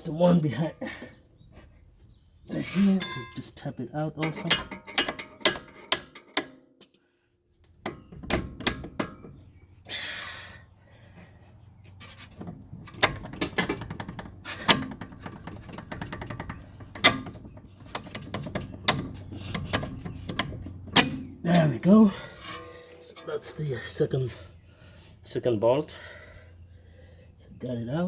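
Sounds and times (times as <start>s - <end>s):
hammer knocking on metal bolt: 4.2s - 6.6s.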